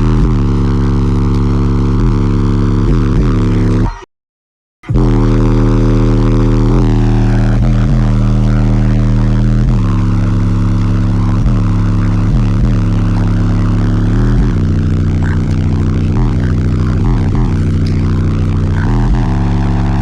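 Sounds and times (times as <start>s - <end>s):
deep bass notes from subwoofers: 0.0s - 4.0s, 4.8s - 20.0s.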